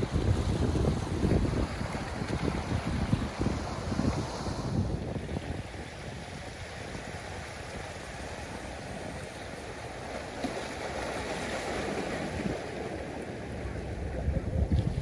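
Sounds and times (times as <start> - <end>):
ocean waves washing in: 0.0 - 15.0.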